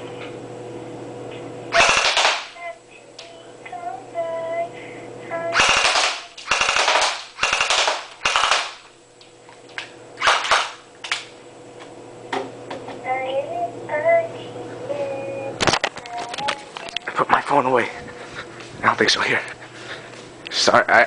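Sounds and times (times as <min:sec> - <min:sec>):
airsoft pistol bursts: 0:01.7 - 0:02.6, 0:05.6 - 0:08.9, 0:10.2 - 0:10.8.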